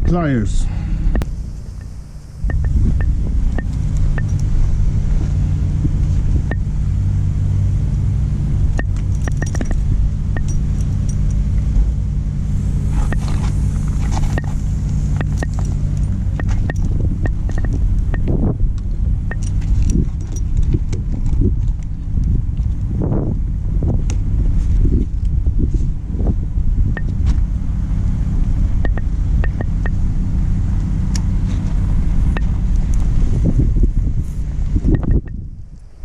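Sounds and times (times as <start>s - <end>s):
truck engine idling: 0.0s - 35.5s
hand tools clicking and clinking: 8.8s - 11.4s, 13.1s - 18.2s, 19.3s - 21.9s.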